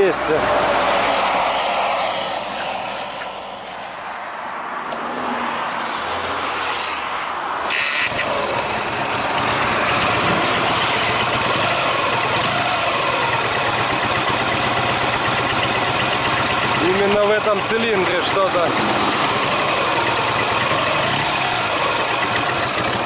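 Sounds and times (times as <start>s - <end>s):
motorcycle engine starting and idling: 7.6s - 23.0s
engine ringing clatter: 8.1s - 23.0s.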